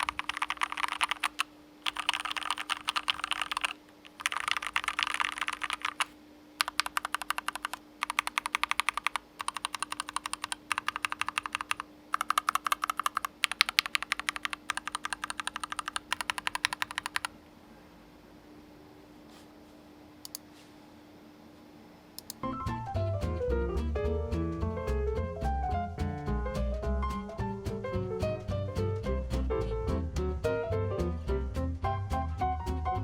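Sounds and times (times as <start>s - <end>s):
mechanical keyboard typing: 0.0s - 17.3s.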